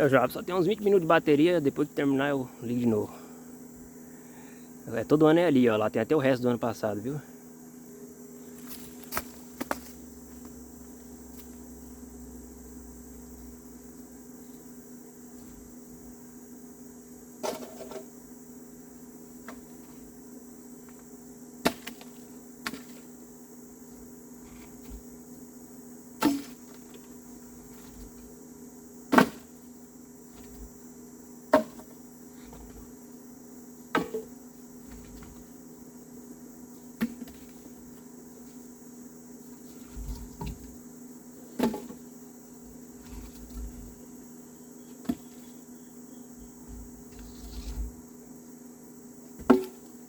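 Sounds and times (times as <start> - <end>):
faint hum: 0.0 - 50.0
firewood knocking onto pile: 8.6 - 10.0, 17.4 - 18.1, 21.6 - 23.0, 26.2 - 27.1, 29.1 - 29.6, 31.5 - 32.9, 33.9 - 35.5, 39.8 - 40.8, 41.6 - 42.0, 49.4 - 49.9.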